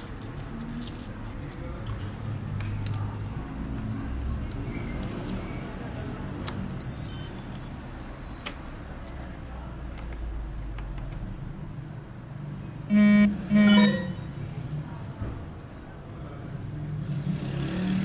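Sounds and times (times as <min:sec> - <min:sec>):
high electronic beep: 0:12.9 - 0:14.4
loud buzzing tones: 0:12.9 - 0:14.4.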